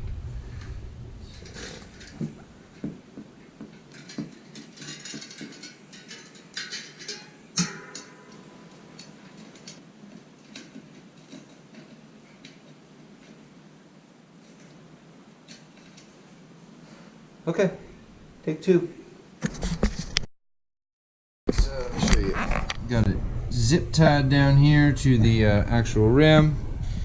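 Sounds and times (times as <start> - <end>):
metallic clicks of bicycle parts: 3.7 - 8.4, 9.0 - 9.8
sharp ringing metal knock: 7.6 - 8.5.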